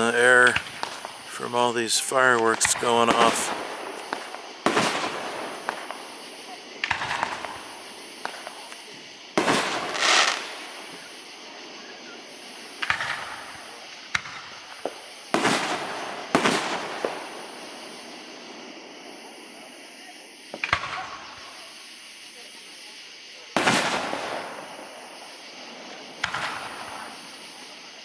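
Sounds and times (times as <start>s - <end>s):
fireworks bursting: 0.0s - 28.0s.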